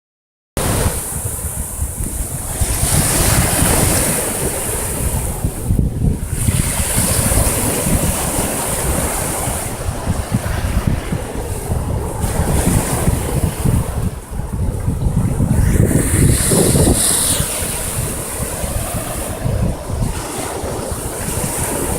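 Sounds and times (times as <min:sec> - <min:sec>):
sea waves breaking on shore: 0:00.6 - 0:21.9
wind buffeting microphone: 0:00.6 - 0:21.9.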